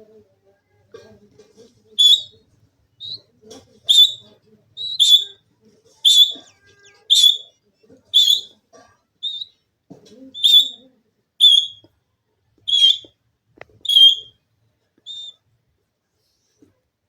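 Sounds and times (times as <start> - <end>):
parrot shrill calls: 2.0 - 2.3, 3.9 - 4.2, 4.8 - 5.4, 6.0 - 7.5, 8.2 - 8.5, 9.2 - 9.5, 10.4 - 10.8, 11.4 - 11.8, 12.7 - 13.1, 13.9 - 14.3, 15.1 - 15.3.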